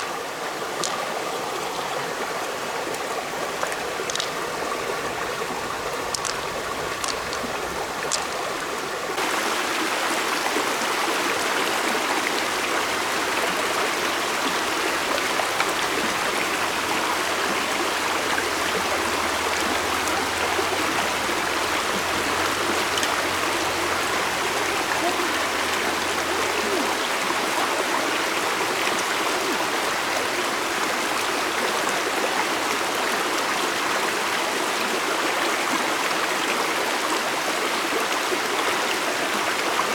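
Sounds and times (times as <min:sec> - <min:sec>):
stream water rushing: 0:00.0 - 0:39.9
faint clicks: 0:00.8 - 0:01.2, 0:03.6 - 0:08.9.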